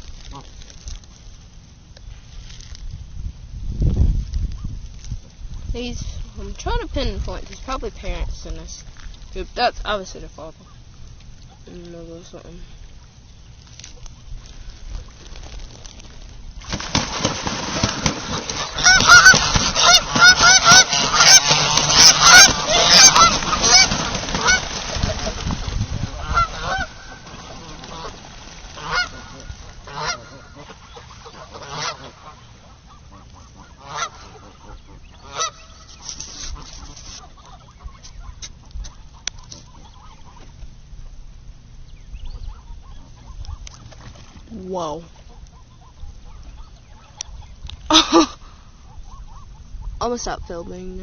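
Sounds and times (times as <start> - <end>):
geese honking: 17.8 - 41.2.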